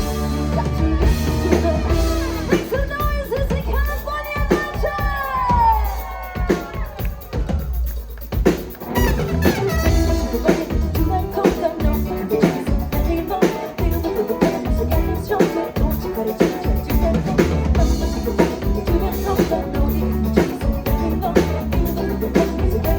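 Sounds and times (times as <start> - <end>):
drum kit: 0.0 - 22.9
latin pop band playing: 0.0 - 22.9.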